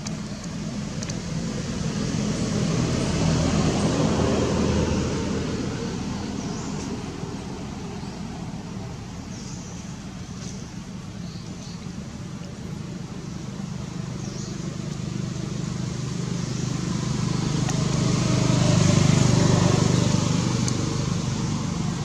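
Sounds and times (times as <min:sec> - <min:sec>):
vehicle passing by: 0:00.1 - 0:09.5, 0:13.6 - 0:22.0.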